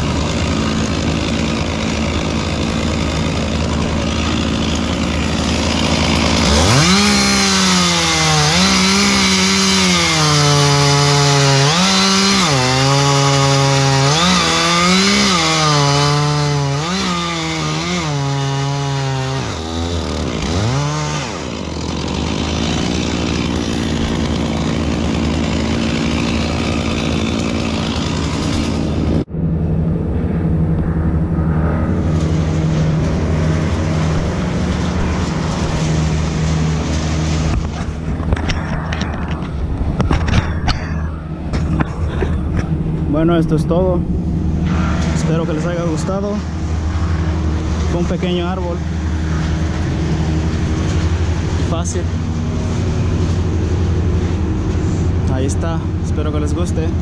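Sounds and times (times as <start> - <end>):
chainsaw cutting wood: 0.0 - 29.3, 33.5 - 39.5
steady engine hum: 0.0 - 57.0.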